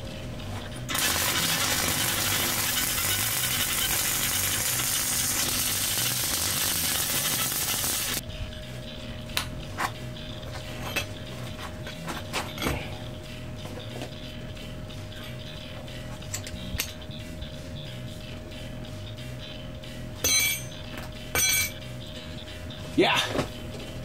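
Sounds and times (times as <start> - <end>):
welding arc crackling: 0.9 - 8.2.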